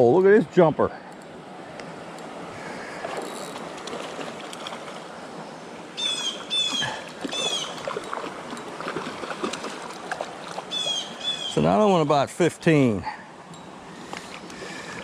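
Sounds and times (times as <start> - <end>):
creek water rushing: 0.0 - 15.0
bird calling: 5.9 - 8.2, 10.4 - 11.8.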